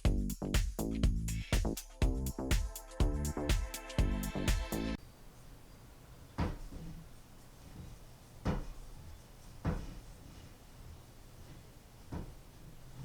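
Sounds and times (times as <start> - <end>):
background music: 0.0 - 5.0.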